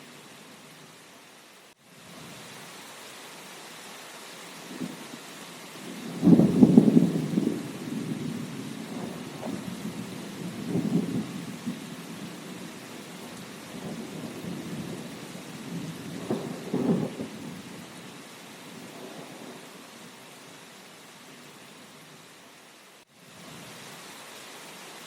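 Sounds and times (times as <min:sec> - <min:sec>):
steady rain: 0:00.0 - 0:25.0
rolling thunder: 0:06.0 - 0:17.8.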